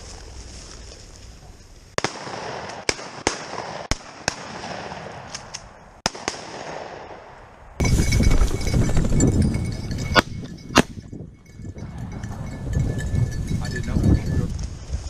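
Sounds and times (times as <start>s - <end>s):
shotgun shots echoing: 2.0s - 7.4s, 10.1s - 11.0s.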